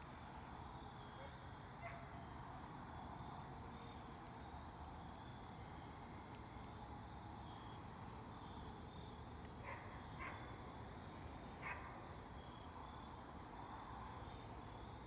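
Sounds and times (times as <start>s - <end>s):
campfire crackling: 0.0s - 15.0s
dog barks: 1.2s - 2.1s, 9.6s - 10.4s, 11.6s - 12.0s.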